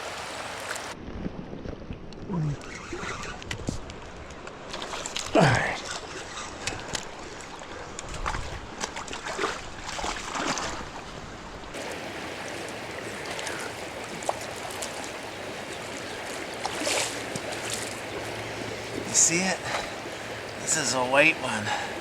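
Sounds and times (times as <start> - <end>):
river water flowing: 0.0 - 1.0, 4.4 - 22.0
splashes and knocks: 8.1 - 10.8, 11.8 - 20.0.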